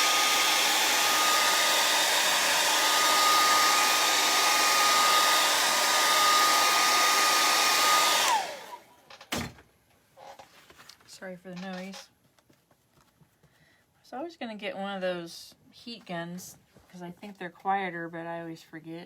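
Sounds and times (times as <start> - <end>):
hair dryer blowing with whine: 0.0 - 8.9.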